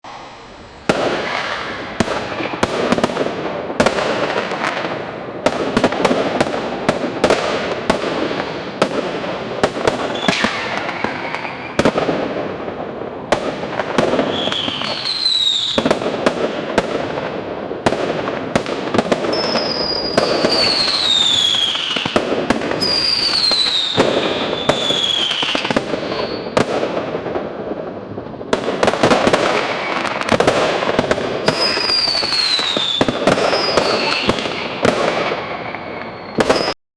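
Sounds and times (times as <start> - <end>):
fireworks bangs and crackling: 0.0 - 36.8
fireworks whistles falling in pitch: 9.7 - 12.4, 13.7 - 16.2, 18.9 - 26.9, 28.7 - 36.8.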